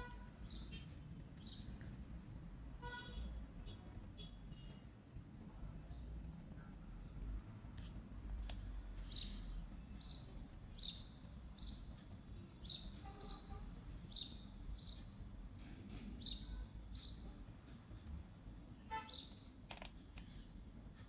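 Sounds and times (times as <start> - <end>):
bird chirping: 0.1 - 1.8, 9.0 - 15.2, 16.2 - 17.4, 18.9 - 19.5.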